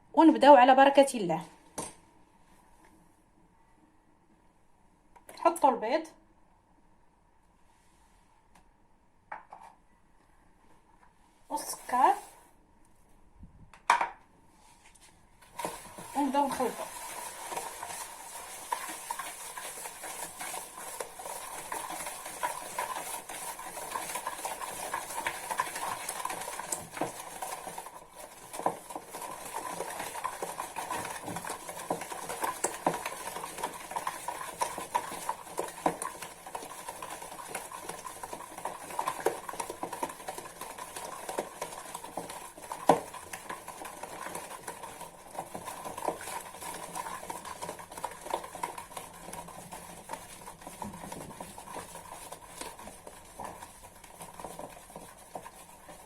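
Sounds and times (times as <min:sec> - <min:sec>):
utensil clicking and scraping bowl: 0:15.5 - 0:56.0.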